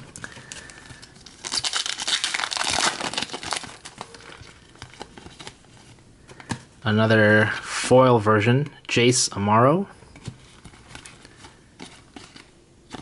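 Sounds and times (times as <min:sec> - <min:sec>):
foil wrapper tearing and crinkling: 0:00.0 - 0:05.6.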